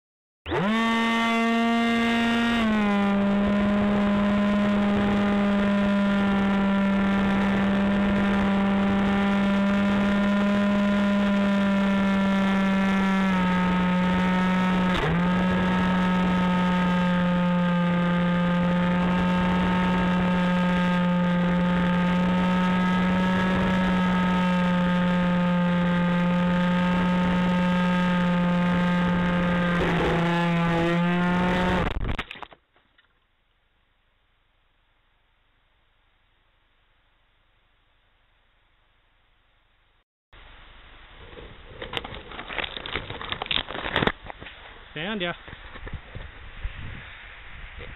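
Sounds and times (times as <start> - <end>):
electric motors high whine: 0.5 - 32.0.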